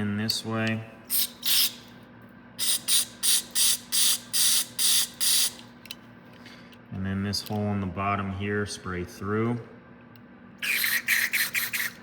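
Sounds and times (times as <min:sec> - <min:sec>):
aerosol spray squirts: 0:01.1 - 0:01.8, 0:10.6 - 0:12.0.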